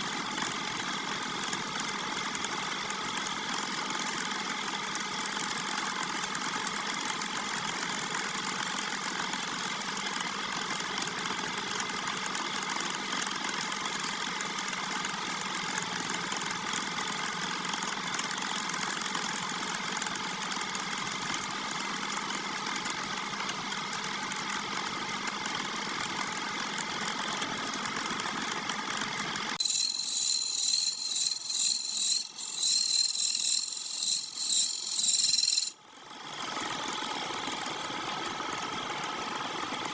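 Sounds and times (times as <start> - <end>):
wood lathe motor whine: 29.6 - 35.8.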